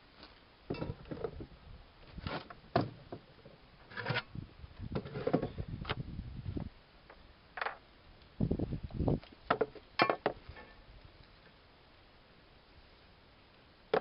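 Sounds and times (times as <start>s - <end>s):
wind rumble on microphone: 4.2s - 6.8s, 8.3s - 9.4s.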